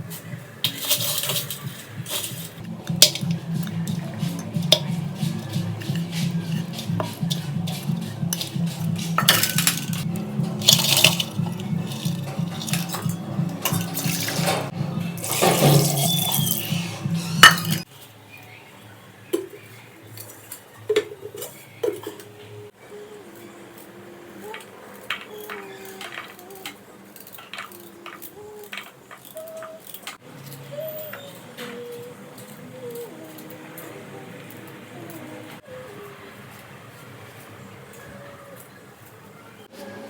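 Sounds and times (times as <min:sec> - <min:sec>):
steady low hum: 0:00.0 - 0:17.8
cooking pot and utensils clattering: 0:00.0 - 0:18.0, 0:19.4 - 0:22.7, 0:24.4 - 0:34.9.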